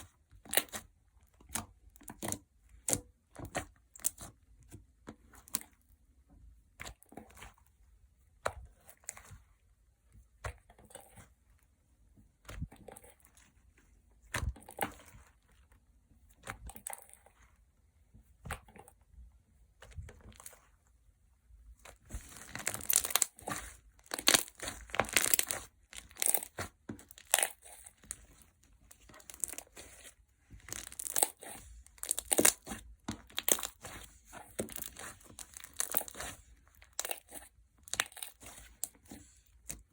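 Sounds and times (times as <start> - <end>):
slime popping and crackling: 22.2 - 28.1, 29.0 - 39.0.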